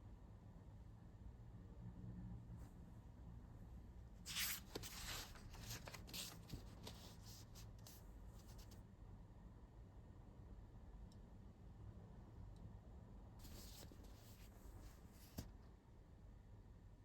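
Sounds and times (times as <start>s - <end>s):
soft rustling and scratching: 4.2s - 8.8s, 13.4s - 15.5s.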